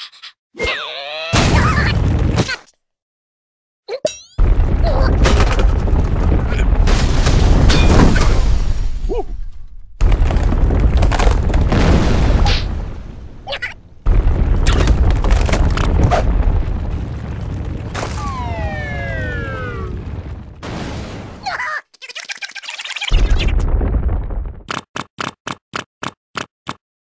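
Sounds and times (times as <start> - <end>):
cartoon earthquake rumble: 4.4 - 21.4, 23.1 - 24.7.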